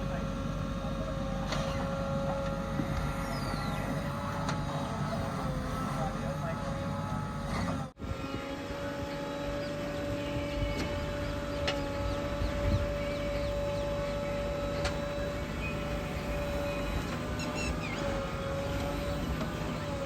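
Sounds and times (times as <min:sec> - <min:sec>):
engine drone: 0:00.0 - 0:20.0.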